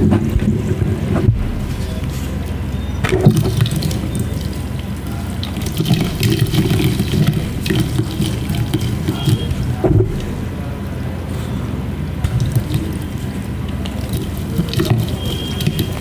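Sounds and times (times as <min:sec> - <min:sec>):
chalk crushed in water sloshing: 0:03.0 - 0:10.4, 0:12.2 - 0:16.0.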